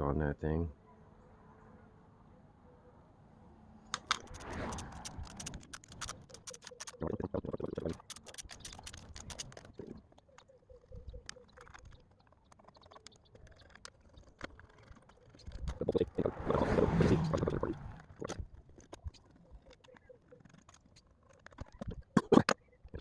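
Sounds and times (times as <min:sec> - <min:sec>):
tools and metal parts clicking: 0:04.0 - 0:07.0.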